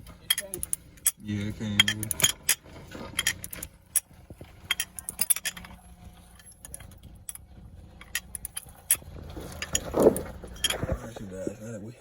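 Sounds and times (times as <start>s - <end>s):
metal clinks of hand tools: 0.2s - 7.4s.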